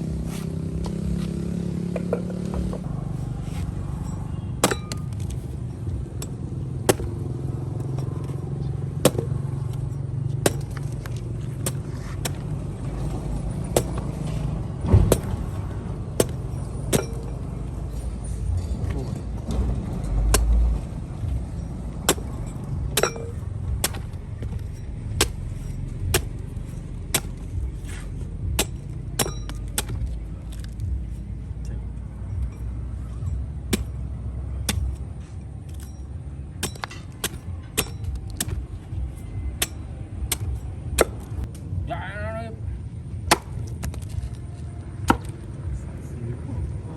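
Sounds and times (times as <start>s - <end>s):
low steady rumble: 2.1s - 46.9s.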